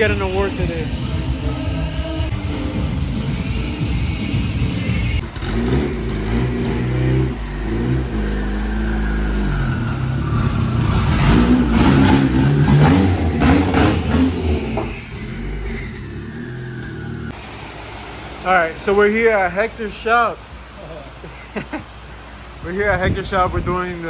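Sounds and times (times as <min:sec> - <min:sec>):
car engine revving and accelerating: 0:05.2 - 0:17.7.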